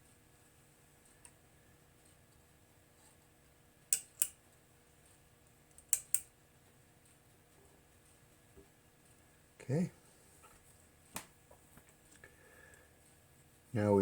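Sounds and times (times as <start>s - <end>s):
small switch clicking: 3.9s - 4.4s, 5.7s - 6.3s.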